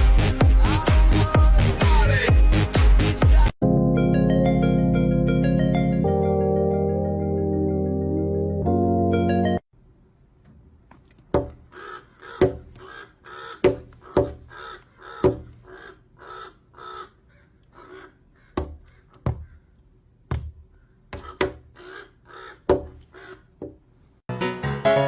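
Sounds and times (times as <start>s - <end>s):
sharp knocks: 11.2s - 11.7s, 12.4s - 12.9s, 13.6s - 14.6s, 15.2s - 15.6s, 18.6s - 19.6s, 20.3s - 21.7s, 22.6s - 23.8s
animal harsh calls: 11.7s - 19.8s, 20.8s - 23.6s.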